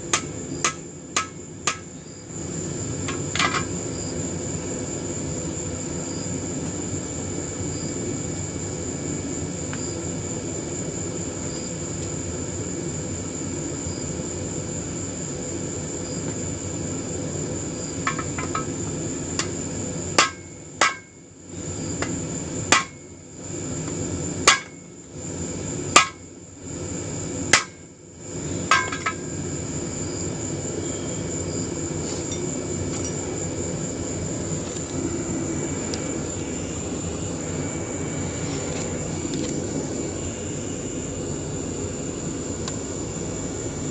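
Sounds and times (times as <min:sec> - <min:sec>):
steady background noise: 0:00.0 - 0:43.9
hammer striking metal on anvil: 0:00.1 - 0:01.9, 0:20.2 - 0:21.1, 0:22.7 - 0:23.0, 0:24.5 - 0:24.8, 0:26.0 - 0:26.2, 0:27.5 - 0:27.8, 0:28.7 - 0:29.3.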